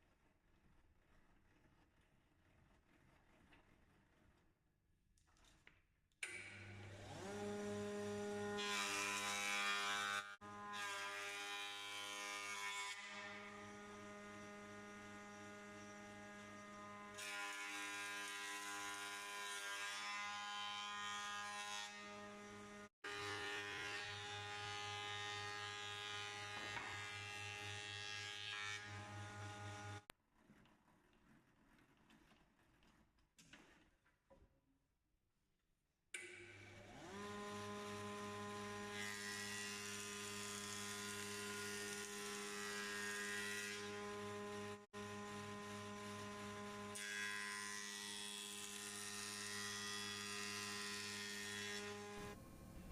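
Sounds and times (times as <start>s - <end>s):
cutter head planing wood: 6.2s - 30.1s, 36.2s - 52.4s
planer motor whine and hum: 6.6s - 9.3s, 36.6s - 42.5s, 43.9s - 47.0s.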